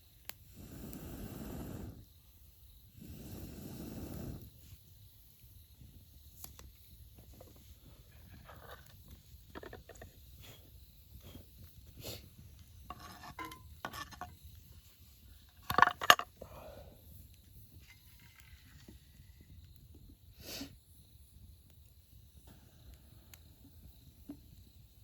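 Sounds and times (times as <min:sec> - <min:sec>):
metal cookware clinking: 0:12.9 - 0:14.3.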